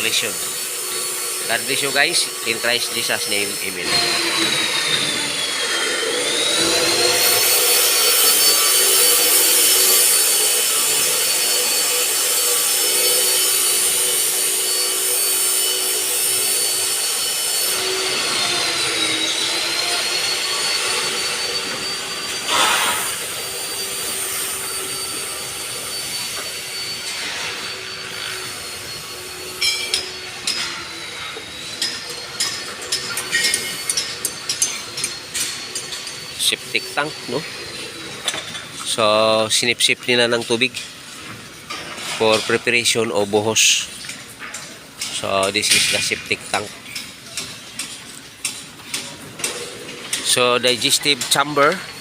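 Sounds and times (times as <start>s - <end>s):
rasping cutting sound: 0.0s - 38.2s
power tool motor whining: 0.0s - 38.7s.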